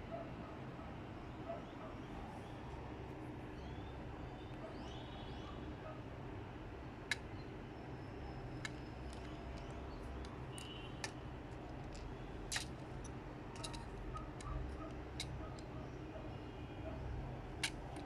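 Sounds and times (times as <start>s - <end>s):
plastic pieces clicking together: 8.6s - 15.7s.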